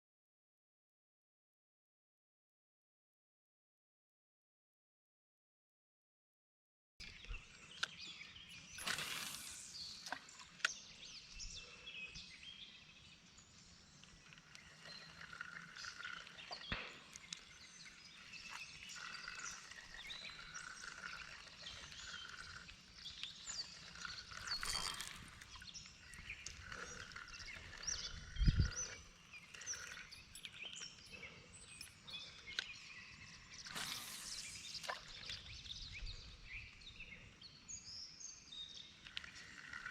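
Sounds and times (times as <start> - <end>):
birds chirping: 7.0 - 39.9.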